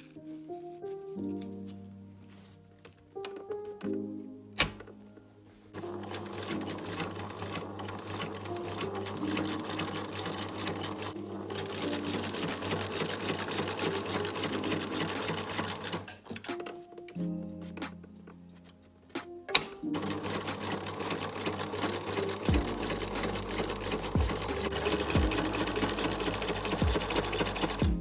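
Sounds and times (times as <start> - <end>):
sewing machine stitching: 5.8 - 16.7, 19.5 - 27.8.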